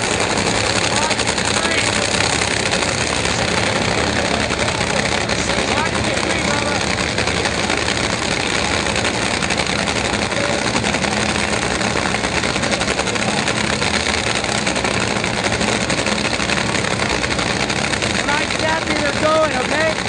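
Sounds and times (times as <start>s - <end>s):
race car engine idling: 0.0s - 20.0s.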